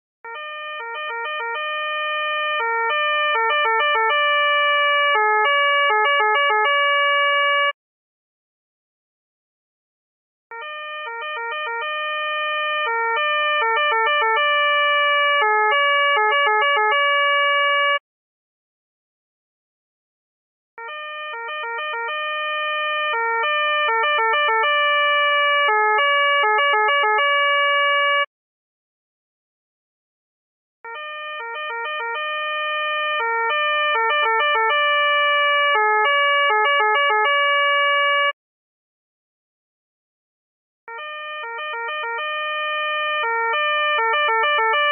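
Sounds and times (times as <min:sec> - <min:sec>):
police two-tone siren: 0:00.2 - 0:07.8, 0:10.5 - 0:18.0, 0:20.8 - 0:28.3, 0:30.8 - 0:38.4, 0:40.9 - 0:44.9.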